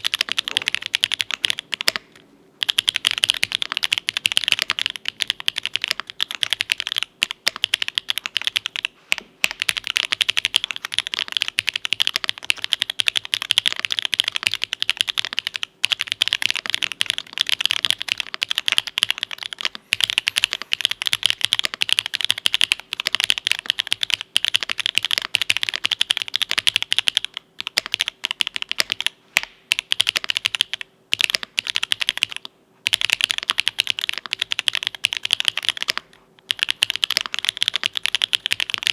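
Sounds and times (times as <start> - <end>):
typing on mechanical keyboard: 0.0 - 38.9.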